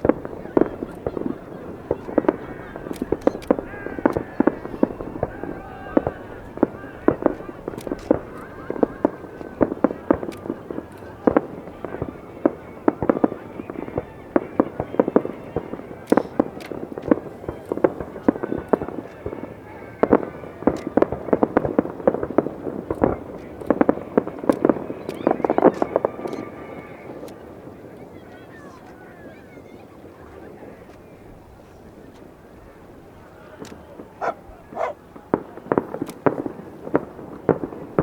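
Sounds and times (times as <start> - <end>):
fireworks bursting: 0.0 - 38.0.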